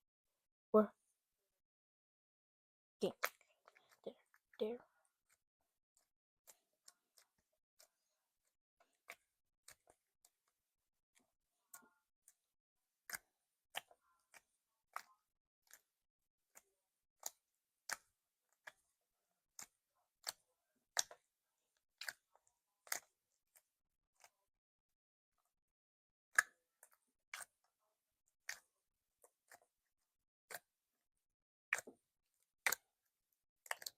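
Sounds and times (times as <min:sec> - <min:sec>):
slime clicking and popping: 0:33.6 - 0:33.9.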